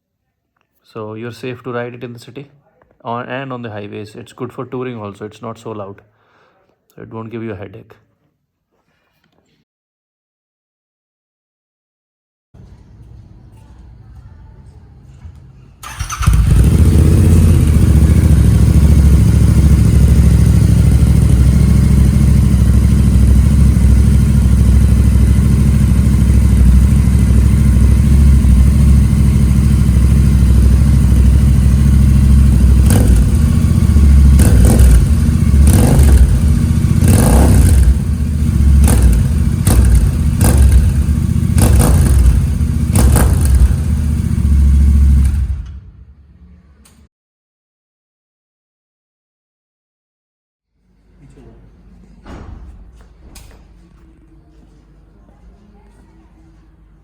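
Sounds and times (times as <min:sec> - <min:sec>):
motorcycle engine idling: 0:15.8 - 0:45.8
motorcycle throttle blips: 0:15.8 - 0:45.8.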